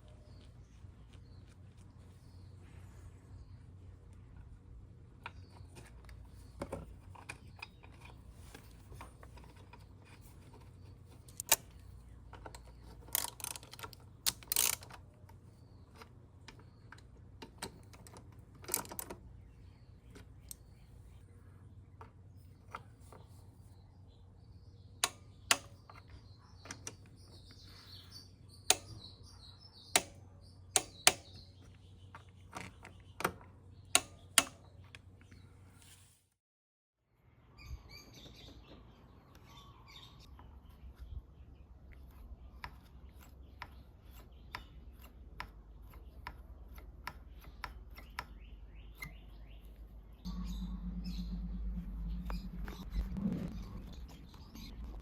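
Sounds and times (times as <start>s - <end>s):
birds chirping faintly: 0.0s - 36.0s, 37.2s - 55.0s
tools clicking and tapping on metal: 25.0s - 27.1s, 28.7s - 29.0s, 29.9s - 35.0s, 42.6s - 49.2s
low steady hum: 48.9s - 55.0s
metal scraping: 50.3s - 55.0s.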